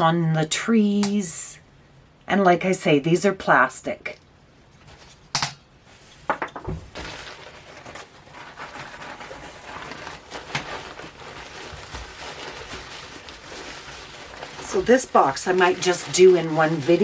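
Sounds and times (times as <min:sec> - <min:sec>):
packing paper rustling: 0:06.7 - 0:17.0.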